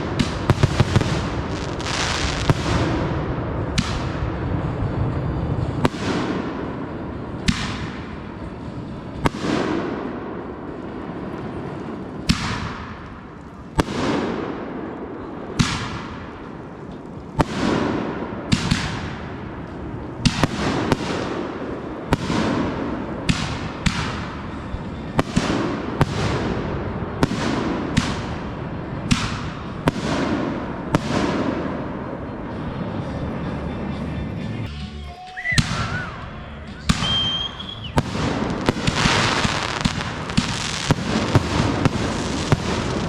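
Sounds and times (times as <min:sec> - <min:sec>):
fireworks hissing crackle: 0:00.0 - 0:03.1, 0:36.7 - 0:43.0
fireworks bangs: 0:00.0 - 0:34.4, 0:35.5 - 0:43.0.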